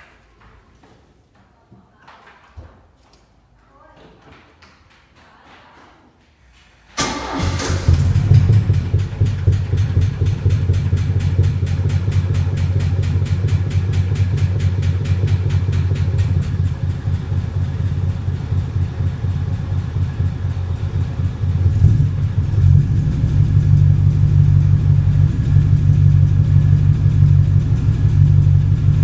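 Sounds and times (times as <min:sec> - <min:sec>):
car engine starting and idling: 0:07.0 - 0:29.0.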